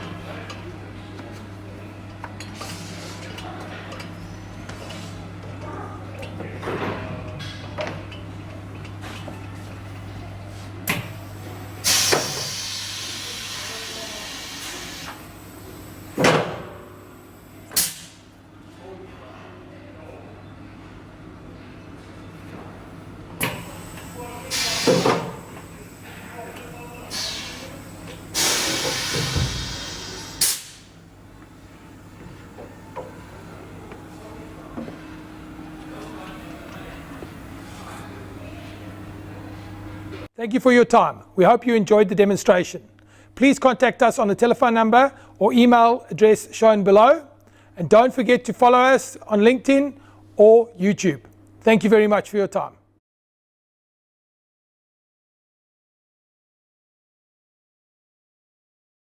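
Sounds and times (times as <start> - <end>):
machine low hum: 3.4 - 40.3
hiss of air: 11.4 - 15.3, 23.5 - 25.8, 27.1 - 30.9.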